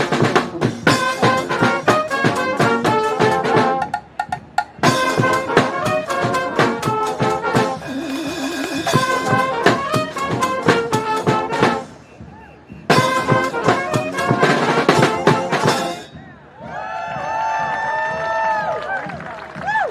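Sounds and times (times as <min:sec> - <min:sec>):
trumpets and trombones: 0:00.0 - 0:16.3
steady drum beat: 0:00.0 - 0:19.0
wavering low brass note: 0:04.8 - 0:11.9.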